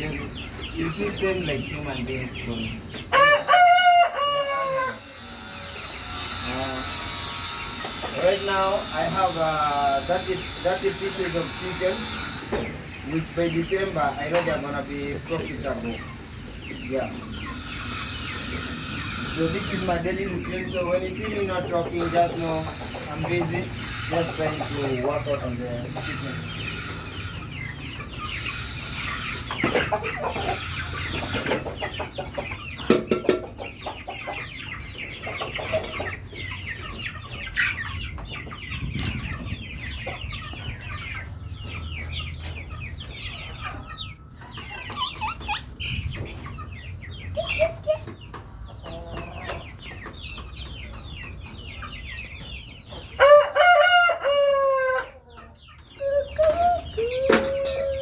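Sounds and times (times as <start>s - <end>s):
chickens clucking: 0.0s - 58.0s
rooster crowing: 3.1s - 5.5s, 53.2s - 55.2s.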